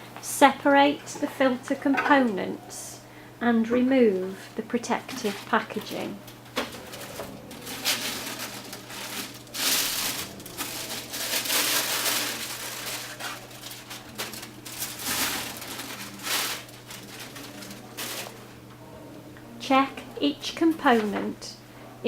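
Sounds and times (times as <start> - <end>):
faint low hum: 0.0 - 22.0
packaging crinkling: 6.6 - 18.5.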